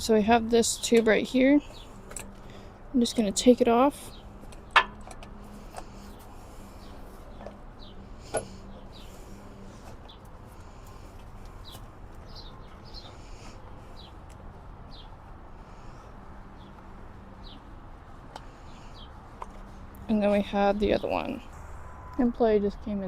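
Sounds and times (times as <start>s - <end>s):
outdoor background hiss: 0.0s - 23.0s
small bird chirping: 11.6s - 14.2s.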